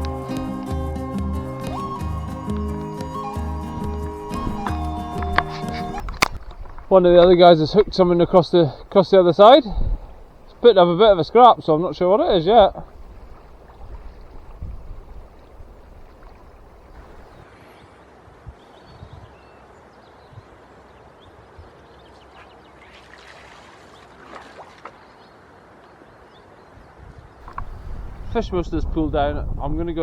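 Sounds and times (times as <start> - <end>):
river water flowing: 0.0 - 17.4, 27.4 - 28.5
wind rumble on microphone: 1.8 - 17.4, 27.4 - 30.0.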